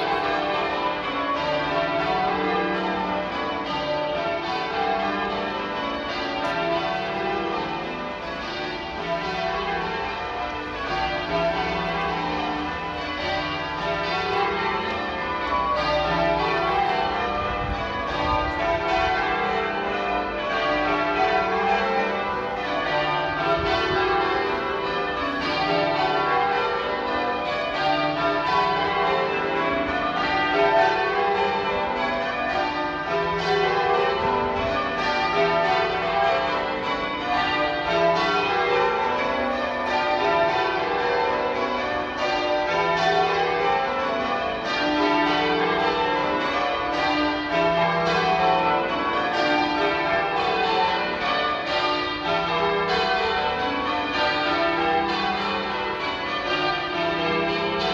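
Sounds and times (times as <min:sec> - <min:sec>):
church bells ringing changes: 0:00.0 - 0:57.9.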